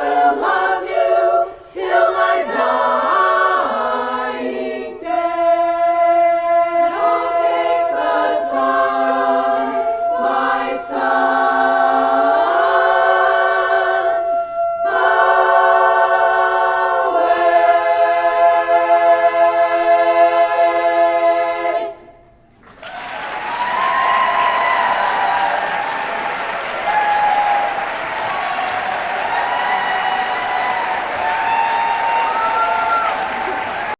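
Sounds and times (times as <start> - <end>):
women's chorus singing a cappella: 0.0 - 22.3, 23.6 - 33.9
applause: 22.6 - 33.9.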